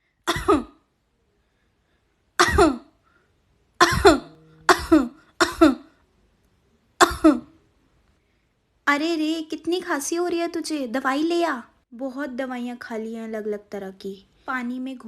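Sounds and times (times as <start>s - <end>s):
girl coughing: 0.3s - 0.8s, 2.4s - 2.9s, 3.8s - 5.9s, 7.0s - 7.5s.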